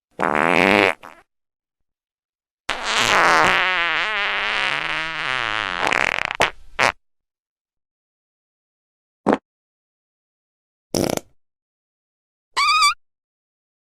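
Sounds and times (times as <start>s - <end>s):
fart sound: 0.2s - 1.3s, 2.7s - 7.0s, 11.0s - 11.3s.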